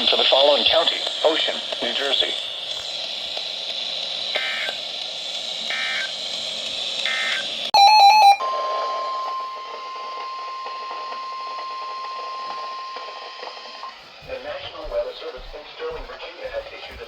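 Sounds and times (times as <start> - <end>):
loud multi-tone beep: 7.8 - 9.2
steady single-pitch attention tone: 7.8 - 9.4.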